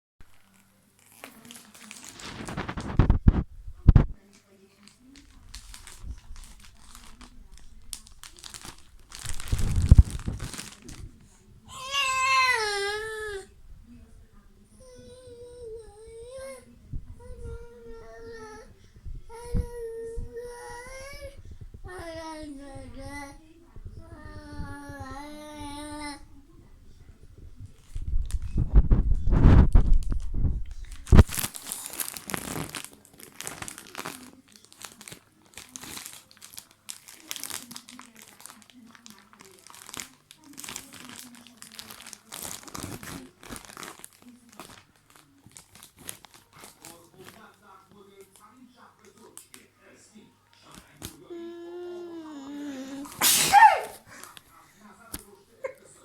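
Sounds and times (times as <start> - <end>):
crinkling and rustling: 0.2 - 26.1, 27.0 - 49.7
baby crying: 11.7 - 13.5, 51.3 - 54.1
adult sneezing: 53.1 - 54.1.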